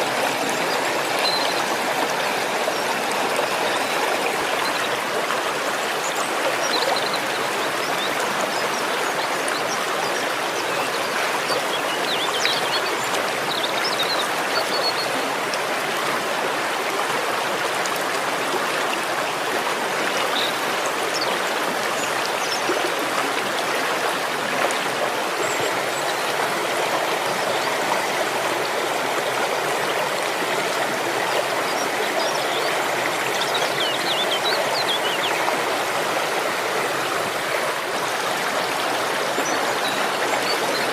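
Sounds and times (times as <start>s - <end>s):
waterfall rushing: 0.0s - 9.7s, 18.3s - 40.9s.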